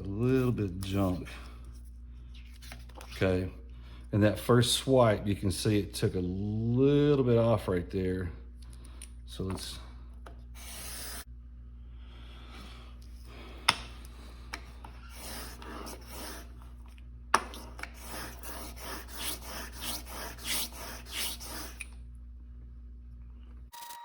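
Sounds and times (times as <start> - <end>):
blade rasping on sandpaper: 10.6 - 11.3, 17.9 - 21.9.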